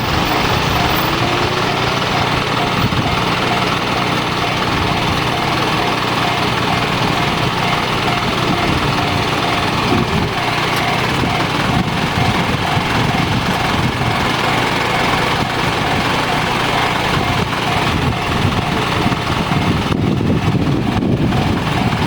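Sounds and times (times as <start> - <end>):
level-crossing alarm ringing: 0.0 - 20.2
mechanical rumble: 0.0 - 22.0.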